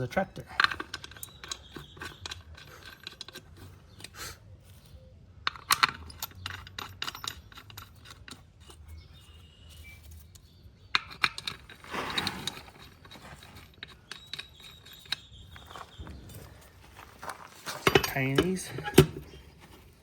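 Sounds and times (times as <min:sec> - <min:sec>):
metal bolts clinking and rattling: 0:00.0 - 0:04.2, 0:05.4 - 0:20.0
metal scraping: 0:10.9 - 0:19.5.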